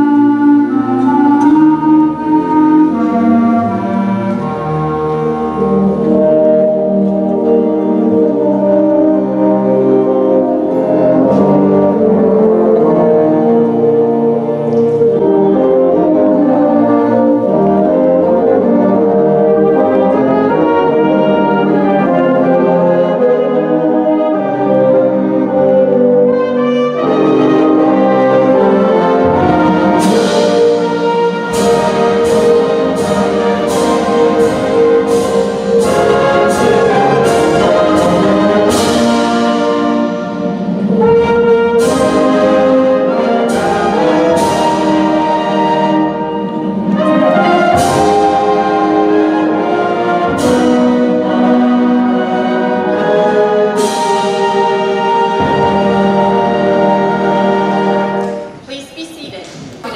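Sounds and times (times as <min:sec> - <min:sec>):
brass band playing chords: 0:00.0 - 0:59.9
percussion hits: 0:27.0 - 0:59.9.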